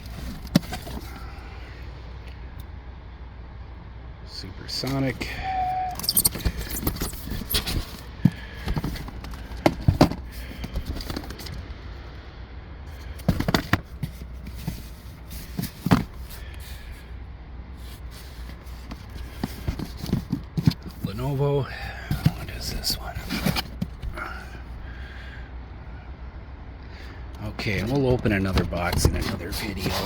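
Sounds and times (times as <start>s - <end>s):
boxes knocking and scraping: 0.0s - 1.3s, 5.9s - 11.6s, 13.0s - 17.0s, 17.8s - 24.5s, 27.6s - 30.0s
steady low rumble: 0.0s - 30.0s.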